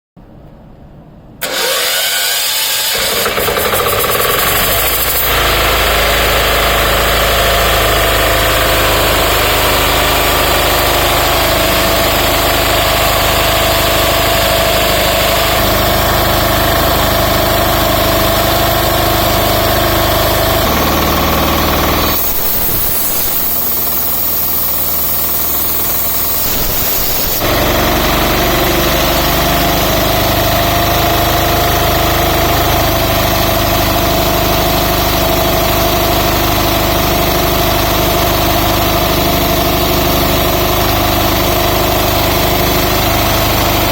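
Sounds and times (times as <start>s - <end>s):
diesel air compressor running: 1.4s - 43.9s
high hiss: 20.7s - 27.7s.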